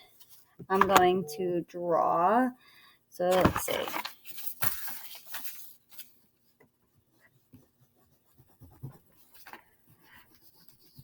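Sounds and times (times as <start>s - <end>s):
pencil scratching on paper: 7.1s - 11.0s.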